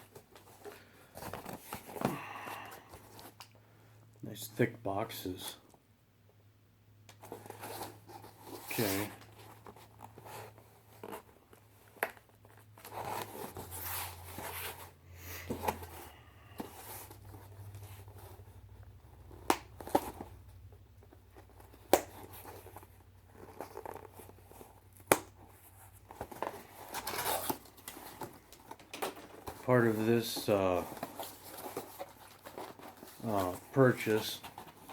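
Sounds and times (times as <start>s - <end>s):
cardboard tearing and crinkling: 21.3s - 34.9s.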